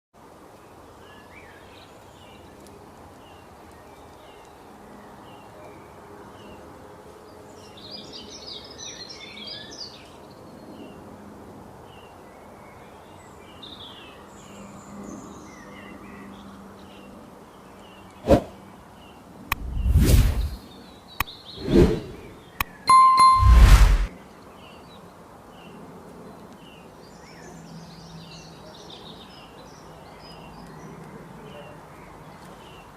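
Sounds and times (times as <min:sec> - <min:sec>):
sharp click: 0:19.5 - 0:19.7
low burst of noise: 0:21.6 - 0:24.1.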